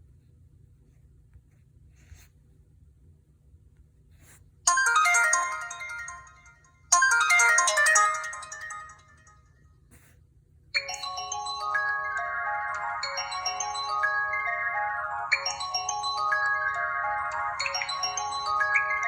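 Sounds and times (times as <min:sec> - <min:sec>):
phone ringtone: 0:04.7 - 0:09.5, 0:10.8 - 0:19.0
bright chiming ringtone: 0:04.7 - 0:09.6, 0:10.8 - 0:19.0.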